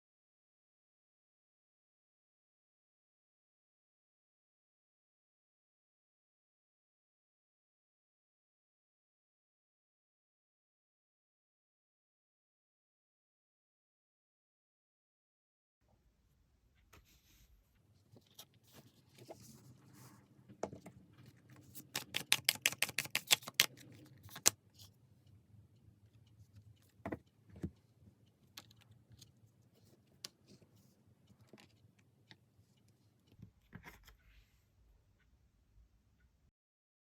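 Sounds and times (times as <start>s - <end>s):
card taps: 21.8s - 23.7s
cards clicking: 21.8s - 24.5s.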